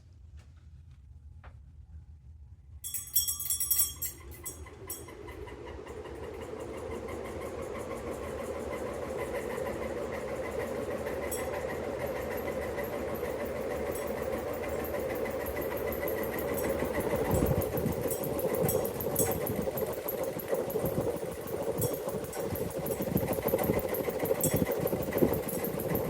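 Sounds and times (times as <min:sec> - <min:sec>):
ceiling fan humming: 0:00.0 - 0:26.0
fast regular ticking: 0:14.6 - 0:26.0.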